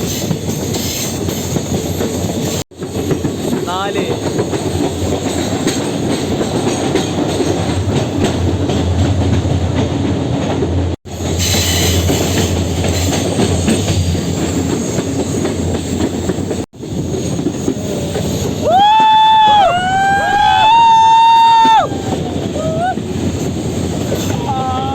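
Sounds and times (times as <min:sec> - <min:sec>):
train wheels clattering on track: 0:00.0 - 0:24.9
high wheel squeal: 0:11.4 - 0:15.4.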